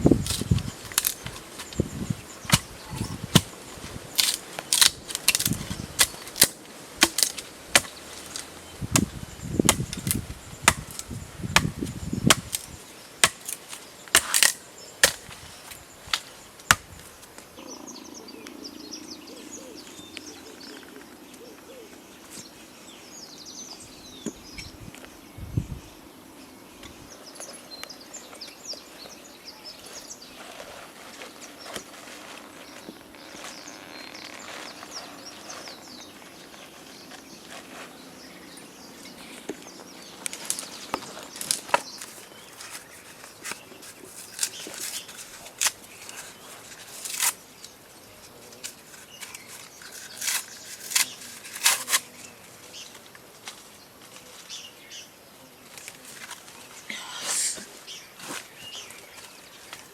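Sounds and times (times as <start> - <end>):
sharp cracks and knocks: 4.2 - 15.4.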